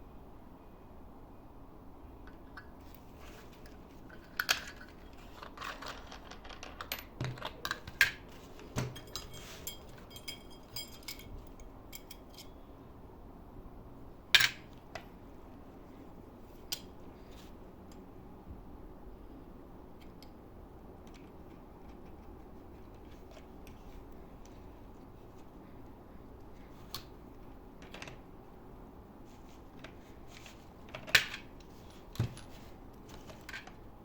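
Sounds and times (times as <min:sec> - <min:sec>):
small objects clicking and clinking: 0:04.1 - 0:08.2.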